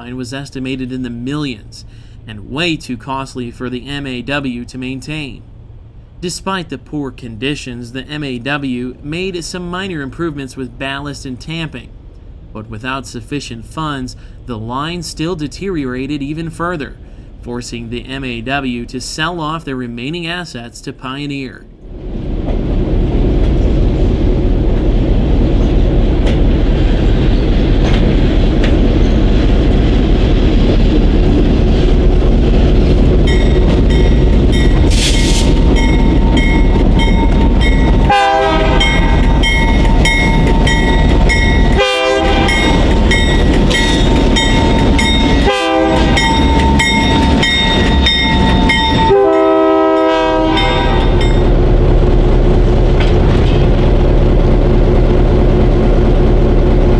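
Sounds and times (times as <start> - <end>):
locomotive low rumble: 0.0 - 21.0, 21.6 - 56.9
locomotive air horn blasts: 34.9 - 35.6, 38.0 - 40.2, 41.7 - 42.9, 45.3 - 46.9, 48.0 - 51.4.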